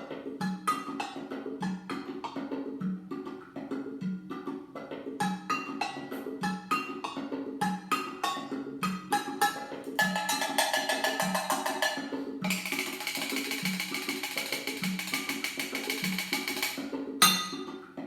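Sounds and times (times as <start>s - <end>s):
percussion music: 0.0s - 18.0s
low drum beat: 10.0s - 16.8s
wood block clicks: 10.2s - 16.9s
bright rattle: 12.5s - 17.4s.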